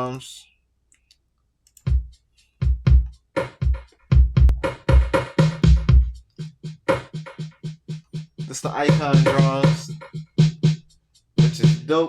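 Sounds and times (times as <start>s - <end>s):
drum machine snare and hat hits: 1.8s - 12.0s
drum machine kicks: 1.9s - 10.8s, 11.4s - 11.9s.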